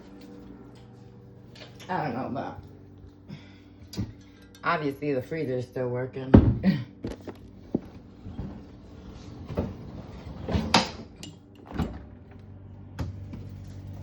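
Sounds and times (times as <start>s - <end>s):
refrigerator humming: 0.0s - 14.0s
refrigerator door knocks and clunks: 6.3s - 6.8s.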